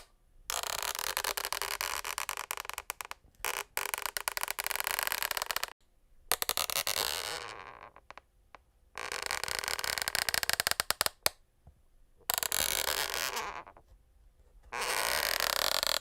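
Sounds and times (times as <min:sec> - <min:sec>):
wooden floorboards creaking: 0:14.7 - 0:16.0.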